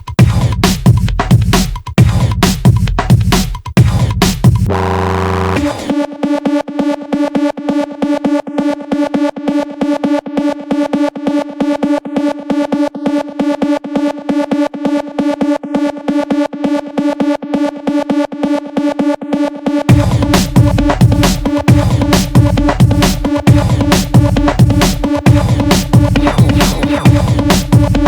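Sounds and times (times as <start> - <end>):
pulsing synthesizer note: 4.7 - 5.9, 26.1 - 27.6.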